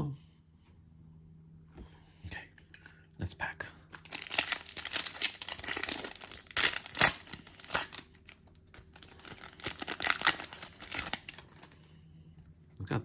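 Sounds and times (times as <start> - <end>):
wrapper tearing and crinkling: 3.9 - 11.8.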